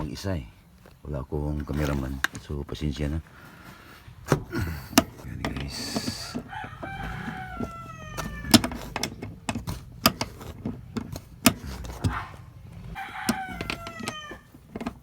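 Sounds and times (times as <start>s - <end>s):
sharp clicks and knocks: 0.8s - 2.6s, 3.8s - 15.0s
cat meowing: 6.1s - 8.8s, 12.0s - 14.5s.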